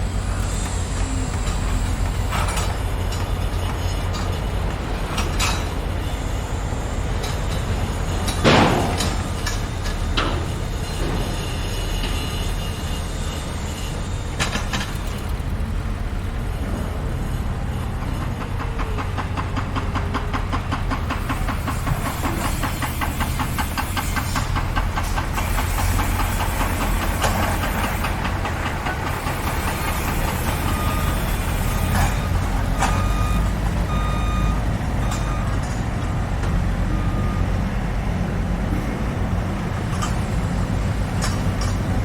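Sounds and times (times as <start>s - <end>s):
diesel machinery rumbling: 0.0s - 42.0s
fast mechanical rattle: 13.8s - 23.4s
reversing alarm beeping: 28.8s - 38.3s.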